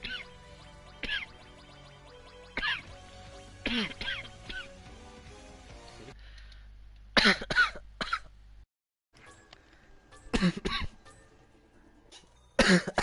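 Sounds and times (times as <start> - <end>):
harsh barking coughs: 1.0 - 1.3, 2.6 - 2.8, 3.6 - 4.7, 7.2 - 8.3, 12.6 - 13.0.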